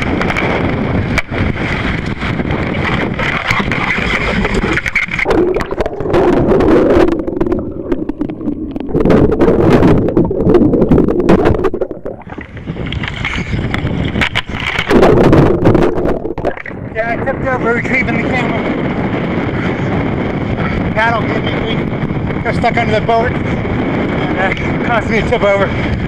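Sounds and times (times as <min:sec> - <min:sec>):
rough water splashing: 0:00.0 - 0:21.0
wind buffeting microphone: 0:00.0 - 0:26.0
sharp knocks and scrapes: 0:02.8 - 0:05.3, 0:12.8 - 0:15.2.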